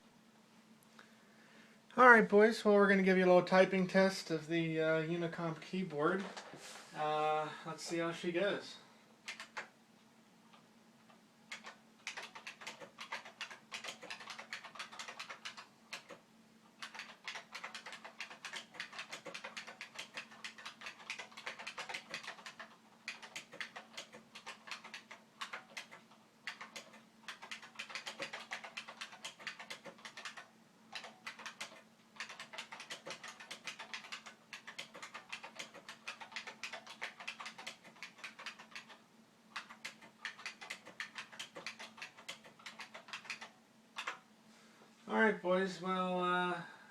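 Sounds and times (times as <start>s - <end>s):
faint steady hum: 0.0s - 46.9s
clicky keyboard typing: 9.2s - 9.7s, 10.5s - 16.2s, 16.8s - 44.2s.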